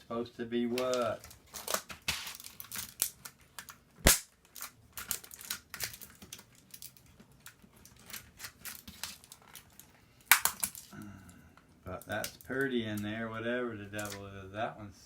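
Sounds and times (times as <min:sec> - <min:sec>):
keyboard parts clicking and snapping: 0:00.8 - 0:10.9.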